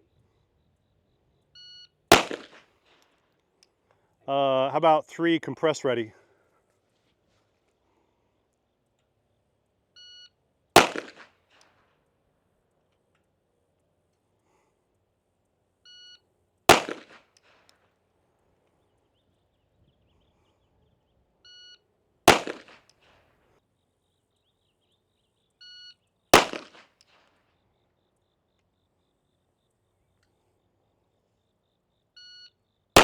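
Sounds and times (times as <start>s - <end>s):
gunshot with echo: 2.1s - 2.7s, 10.8s - 11.3s, 16.7s - 17.3s, 22.3s - 22.9s, 26.4s - 27.0s.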